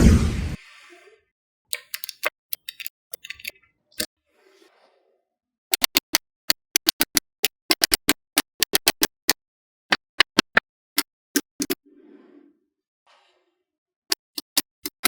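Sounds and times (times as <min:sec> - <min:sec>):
magnetic balls clicking together: 0:01.7 - 0:04.1, 0:05.7 - 0:11.8, 0:14.1 - 0:15.0.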